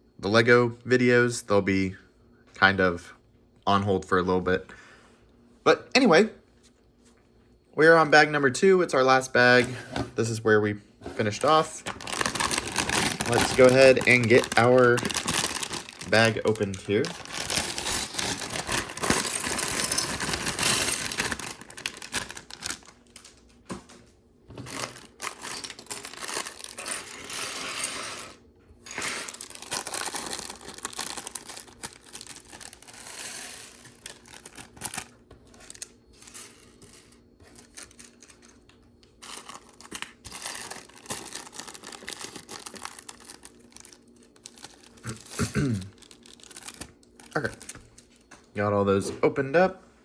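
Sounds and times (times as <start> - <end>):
plastic bags tearing and crinkling: 11.2 - 23.4, 24.6 - 38.6, 39.2 - 47.8
plastic pieces clattering: 11.4 - 23.4, 24.6 - 47.8.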